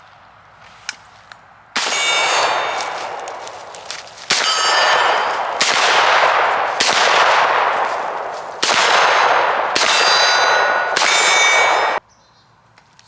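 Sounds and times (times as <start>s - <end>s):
gunshots: 1.8s - 12.0s
steel target ringing: 1.8s - 12.0s.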